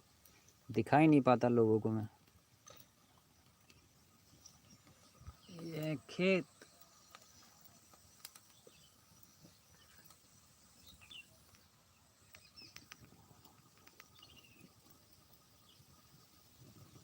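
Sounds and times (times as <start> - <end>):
bird chirps: 4.3 - 13.1, 13.8 - 16.0
faint clicks: 6.6 - 10.3, 11.0 - 15.5.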